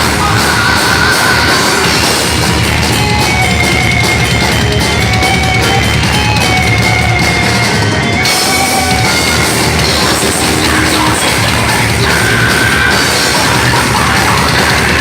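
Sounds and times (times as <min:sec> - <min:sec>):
distorted electric guitars: 0:00.0 - 0:15.0
drum kit: 0:00.0 - 0:15.0.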